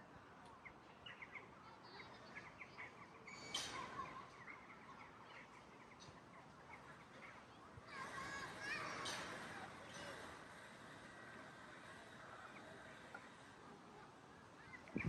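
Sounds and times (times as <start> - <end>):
small birds chirping: 14.5 - 15.0.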